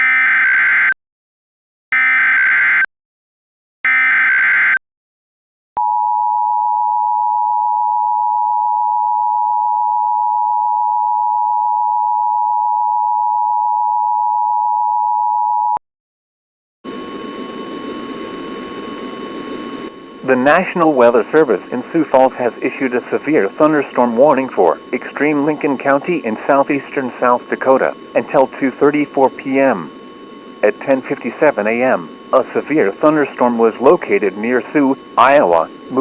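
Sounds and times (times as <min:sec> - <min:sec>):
screeching digital data tones: 0:00.0 - 0:01.0, 0:01.9 - 0:02.9, 0:03.9 - 0:04.8
harsh two-tone attention signal: 0:01.9 - 0:02.9, 0:03.9 - 0:04.8.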